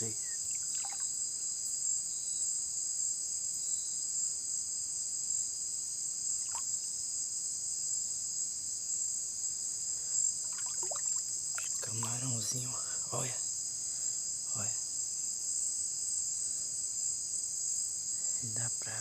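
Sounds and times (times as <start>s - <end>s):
night insects chorus: 0.0s - 19.0s.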